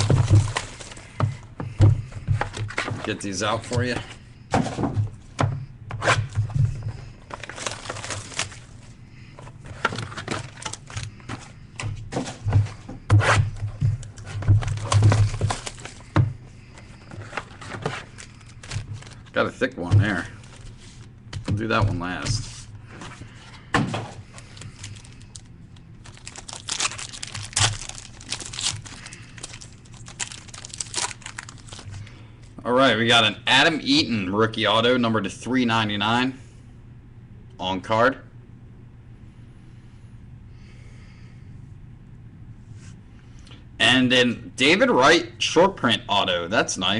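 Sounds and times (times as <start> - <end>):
packaging tearing and crinkling: 0.0 - 1.1, 7.3 - 8.9, 9.7 - 11.2, 14.0 - 16.1, 17.0 - 19.4, 24.3 - 32.0
low steady hum: 0.0 - 46.9.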